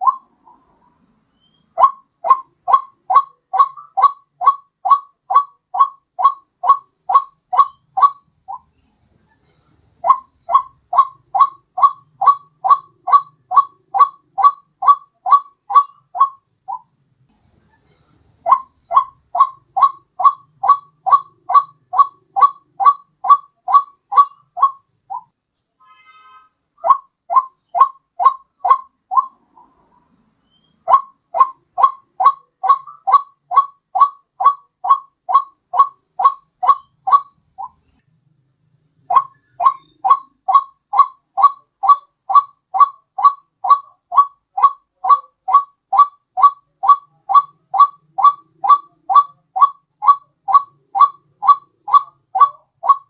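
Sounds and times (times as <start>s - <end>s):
waterhen call: 0.0s - 0.8s, 1.4s - 8.7s, 10.0s - 16.9s, 18.4s - 25.3s, 25.9s - 37.9s, 39.0s - 53.0s.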